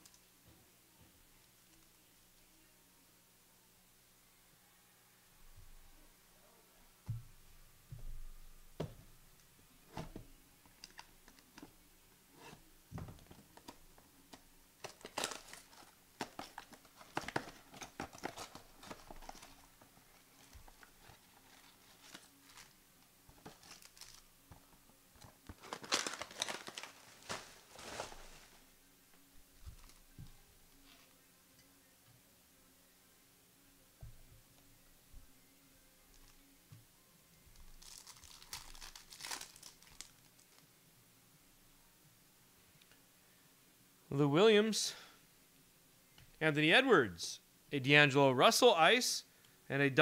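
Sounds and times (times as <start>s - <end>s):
card packs being torn open: 14.8s - 24.3s, 25.2s - 28.2s, 37.6s - 40.6s
foil wrappers crinkling: 14.8s - 24.3s, 25.2s - 28.6s, 37.5s - 40.6s.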